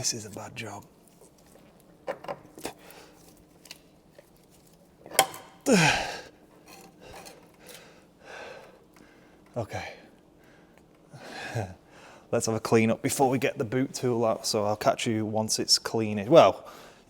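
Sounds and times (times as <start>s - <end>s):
man sighing: 5.6s - 6.4s.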